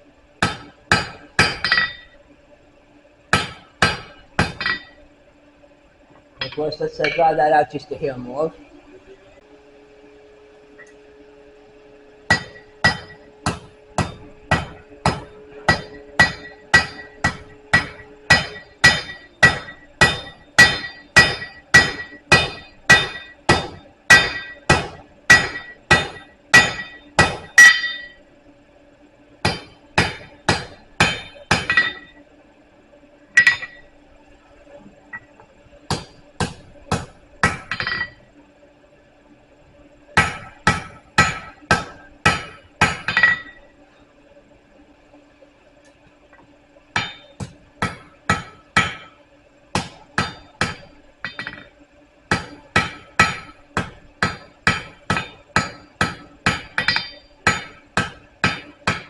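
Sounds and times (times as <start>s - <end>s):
hammer striking steel on anvil: 0.4s - 2.2s, 3.3s - 5.0s, 6.4s - 7.5s, 12.3s - 28.2s, 29.4s - 32.2s, 33.4s - 33.9s, 35.9s - 38.2s, 40.2s - 43.7s, 47.0s - 49.2s, 49.8s - 59.0s.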